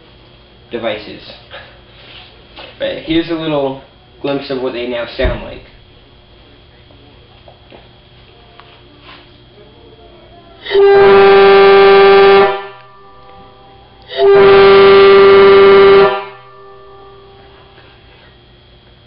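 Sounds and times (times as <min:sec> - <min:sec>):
air horn blasts: 0:10.6 - 0:18.0.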